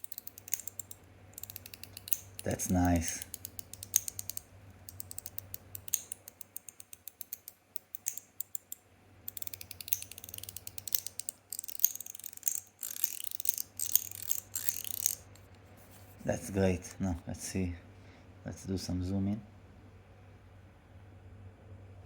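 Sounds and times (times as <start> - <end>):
metal slider fidget clicking: 0.0 - 15.5.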